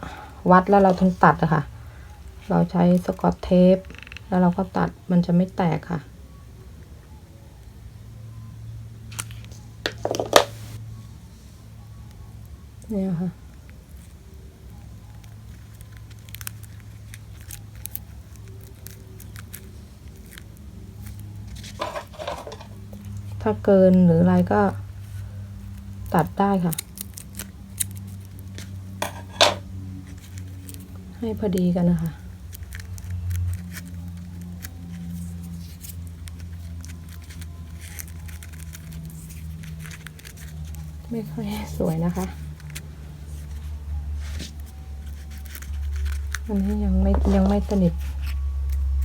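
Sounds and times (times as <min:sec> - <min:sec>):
steady low hum: 0:00.0 - 0:49.0
small clicks and rustles: 0:13.5 - 0:23.4, 0:25.0 - 0:49.0.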